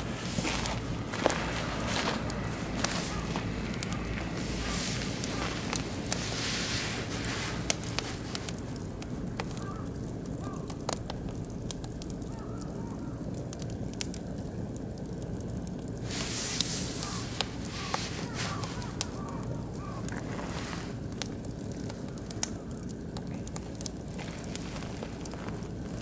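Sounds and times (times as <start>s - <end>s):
hissing rush: 0.0s - 9.3s, 16.0s - 22.8s
fire popping: 0.0s - 26.0s
wood fire crackling: 0.0s - 26.0s.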